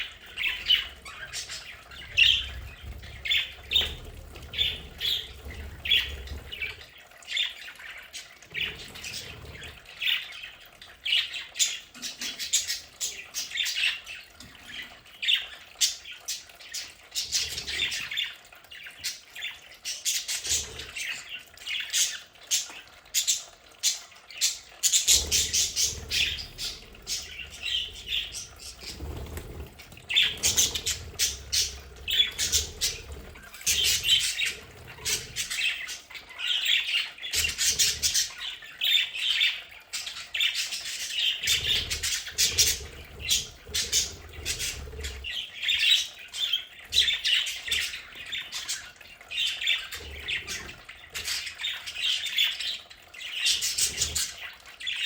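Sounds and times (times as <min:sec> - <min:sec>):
budgerigars chattering and chirping: 0:00.0 - 0:55.0.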